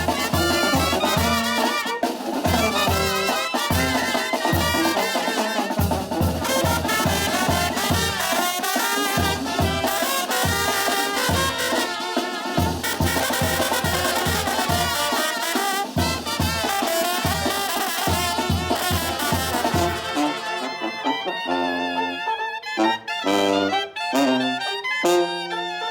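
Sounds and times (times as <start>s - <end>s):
bass and drums beat: 0.0s - 1.4s
brass melody: 0.0s - 25.9s.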